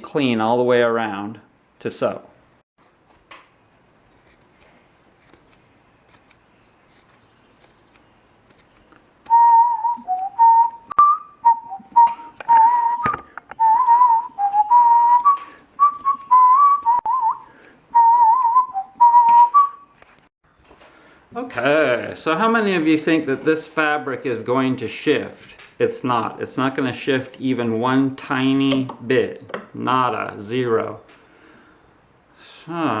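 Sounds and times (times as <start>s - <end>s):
person whistling a tune: 9.3s - 19.9s.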